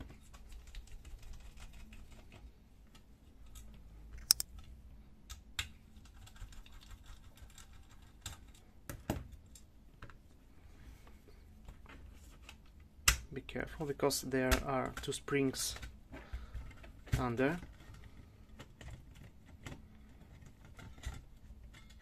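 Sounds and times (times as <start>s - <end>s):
screwdriver clicking on screws: 4.2s - 4.4s
metal and plastic parts clicking: 4.2s - 4.5s.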